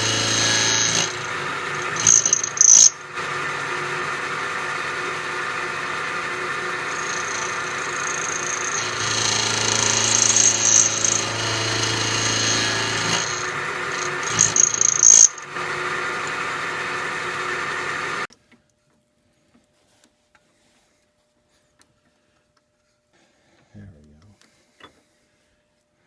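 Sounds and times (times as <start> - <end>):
milling machine cutting steel: 0.0 - 18.3.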